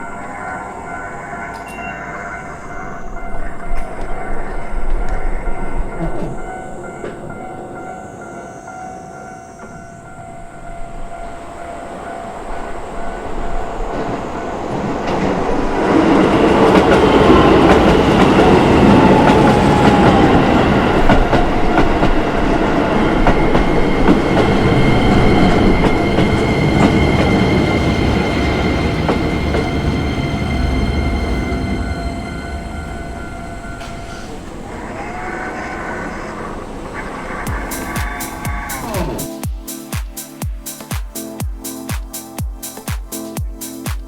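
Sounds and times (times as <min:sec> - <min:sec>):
level crossing warning bell: 0:00.0 - 0:34.8
electric train passing: 0:00.0 - 0:44.0.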